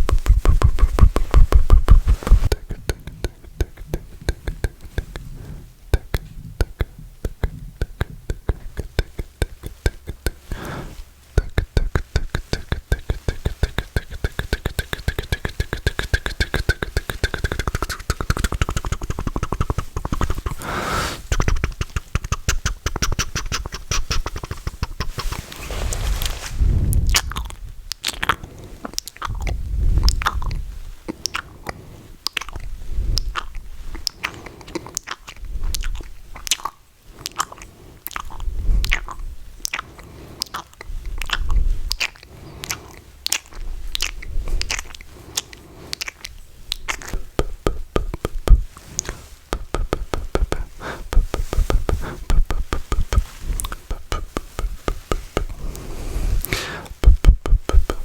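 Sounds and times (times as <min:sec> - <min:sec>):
wet tongue clicks and smacks: 0:00.0 - 0:10.5, 0:11.4 - 0:20.6, 0:21.3 - 0:25.4, 0:27.1 - 0:55.6, 0:56.4 - 0:58.0
low mouth thuds: 0:00.0 - 0:31.5, 0:46.7 - 0:58.0.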